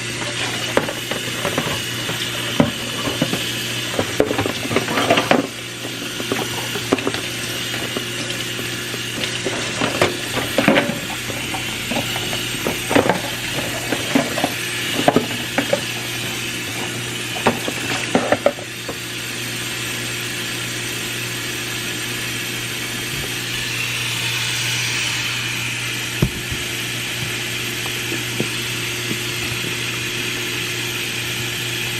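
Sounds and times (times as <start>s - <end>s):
objects being handled: 0.2s - 18.6s.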